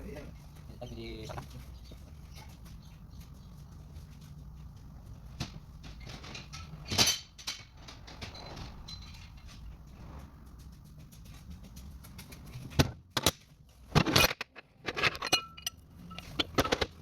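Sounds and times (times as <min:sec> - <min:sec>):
metal parts clattering: 0:05.8 - 0:09.6, 0:13.9 - 0:17.0.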